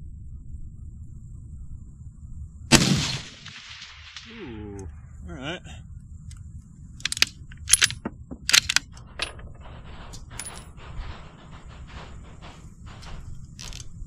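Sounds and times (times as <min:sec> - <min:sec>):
rifle metallic clicks and clinks: 0:07.0 - 0:11.2, 0:12.9 - 0:14.0.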